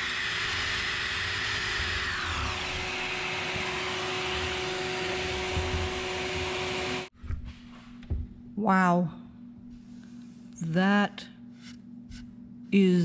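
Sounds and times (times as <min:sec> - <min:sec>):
sander running against wood: 0:00.0 - 0:07.1
shop vacuum running: 0:00.0 - 0:07.1.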